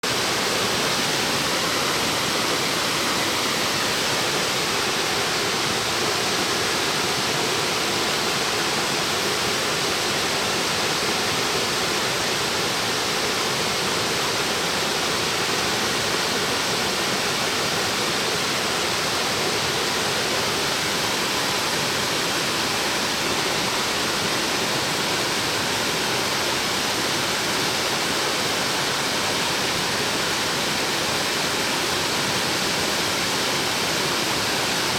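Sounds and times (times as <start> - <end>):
waterfall rushing: 0.0 - 34.9.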